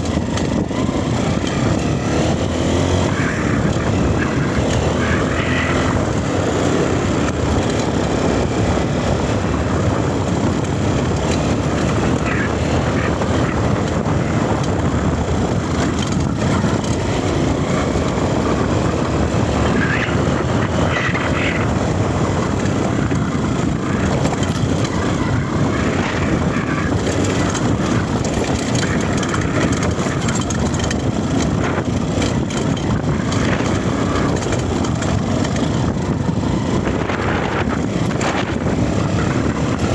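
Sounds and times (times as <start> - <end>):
dirt bike engine running: 0.0 - 39.9.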